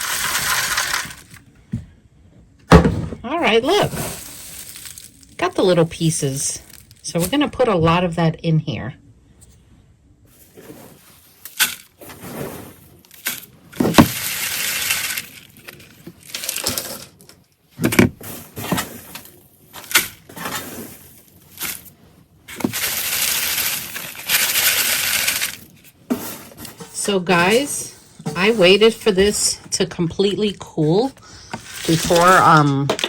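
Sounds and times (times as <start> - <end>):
wood chips rattling through sieve: 0.0 - 1.4, 3.5 - 7.1, 10.5 - 17.2, 18.2 - 21.9, 22.5 - 27.8, 31.6 - 33.0
knocks and scrapes: 17.8 - 33.0.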